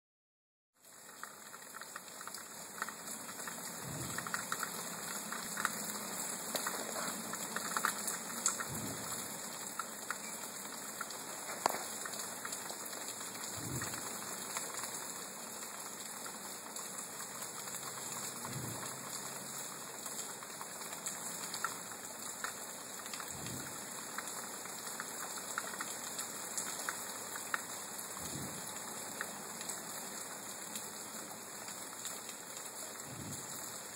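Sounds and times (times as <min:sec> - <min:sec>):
steady rain falling: 0:00.8 - 0:33.9
low dull booms: 0:03.8 - 0:04.2.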